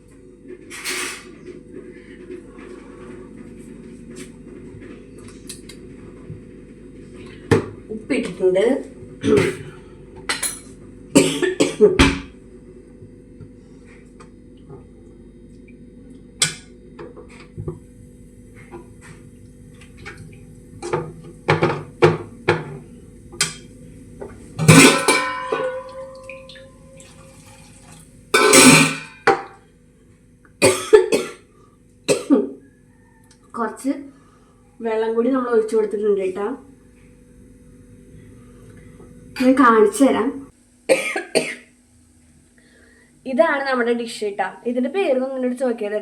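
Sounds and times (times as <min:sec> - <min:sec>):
water poured into a pan: 0:25.8 - 0:28.1.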